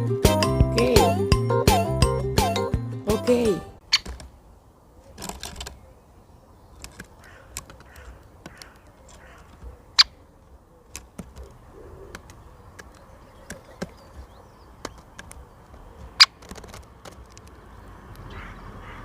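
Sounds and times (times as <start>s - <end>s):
woodpecker pecking: 3.8s - 19.0s.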